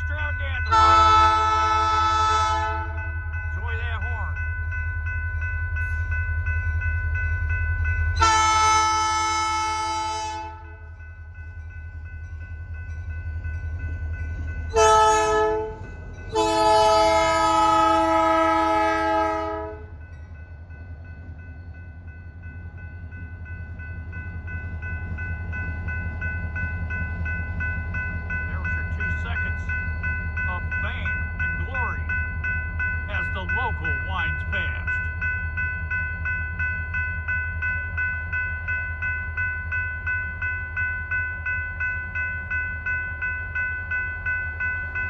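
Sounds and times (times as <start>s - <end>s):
crossing bell ringing: 0.0s - 45.0s
locomotive air horn: 0.7s - 3.0s, 8.2s - 10.8s, 14.8s - 19.9s.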